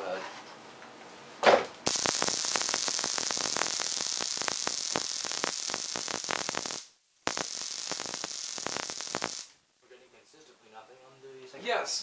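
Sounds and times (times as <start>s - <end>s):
tesla coil sparks crackling: 1.8s - 9.6s.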